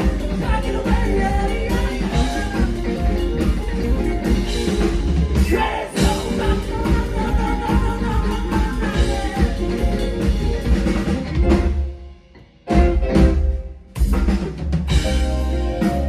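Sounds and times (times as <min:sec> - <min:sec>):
live band playing: 0:00.0 - 0:16.0.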